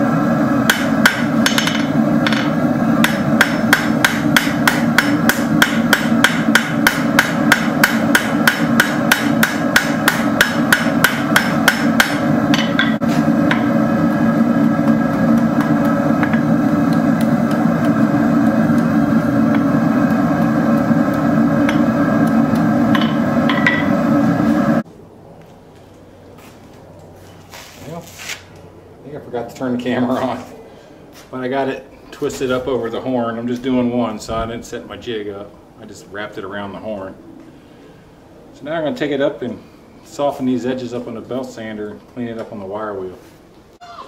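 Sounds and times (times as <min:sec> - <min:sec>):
hammer striking steel on anvil: 0:00.7 - 0:24.1.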